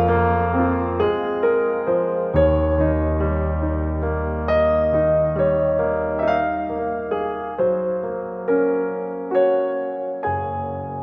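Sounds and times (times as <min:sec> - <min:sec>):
soft piano music: 0:00.0 - 0:11.0.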